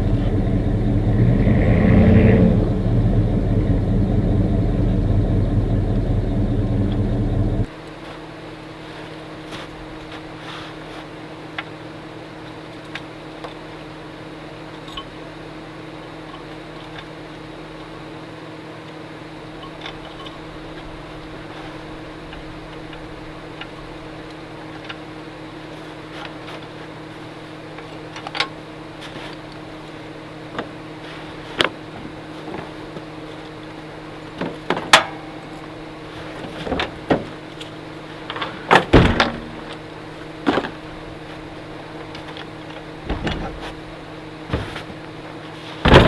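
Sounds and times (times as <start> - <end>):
low machine hum: 0.0 - 46.0.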